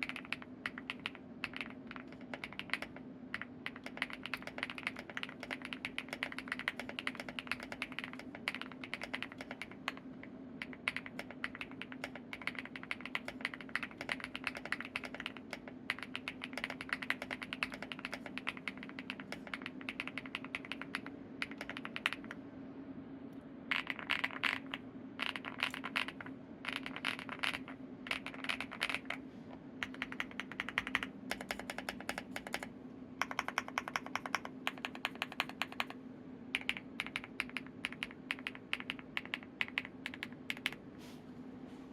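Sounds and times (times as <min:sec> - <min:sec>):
fast typing on mechanical keyboard: 0:00.0 - 0:22.4, 0:23.7 - 0:29.2, 0:29.8 - 0:40.8.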